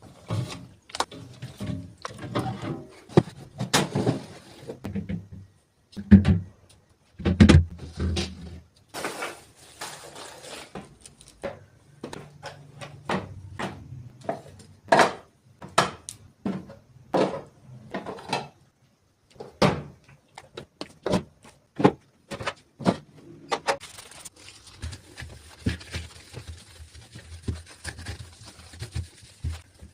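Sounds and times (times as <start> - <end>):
refrigerator drawers knocking and clattering: 0.1 - 6.6, 7.2 - 10.8, 11.4 - 18.6, 19.4 - 20.0, 21.0 - 23.8.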